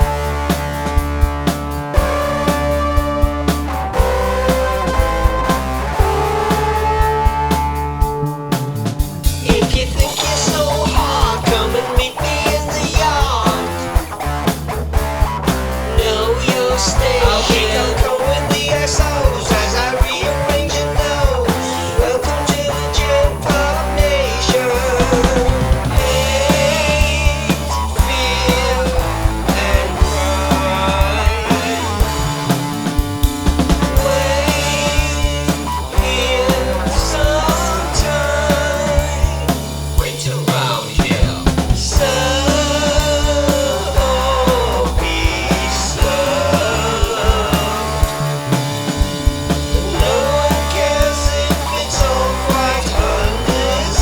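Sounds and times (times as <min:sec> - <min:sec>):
rock music: 0:00.0 - 0:54.0.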